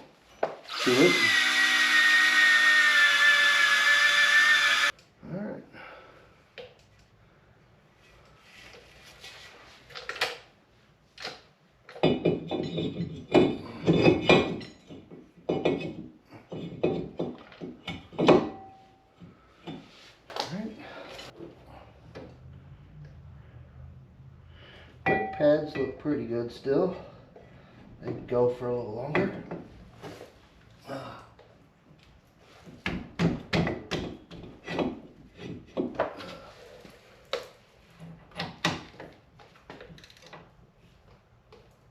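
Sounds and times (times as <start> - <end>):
metal parts and tools clunking: 11.2 - 18.8.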